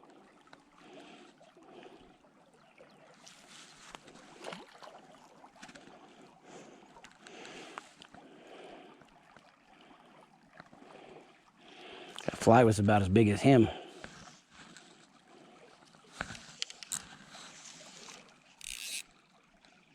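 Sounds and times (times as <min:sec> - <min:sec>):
small splashes: 0:00.0 - 0:06.3
creek trickling over stones: 0:00.0 - 0:19.9.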